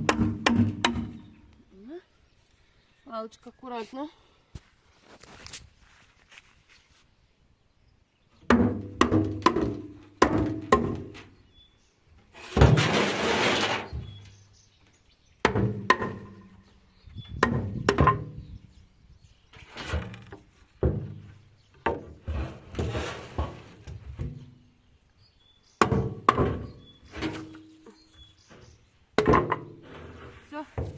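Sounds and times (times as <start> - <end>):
heavy wooden knocks and thuds: 0.0 - 1.4, 8.4 - 11.4, 15.4 - 18.7, 19.8 - 24.6, 25.8 - 29.8, 30.6 - 30.9
rasping crashing noise: 12.4 - 14.2.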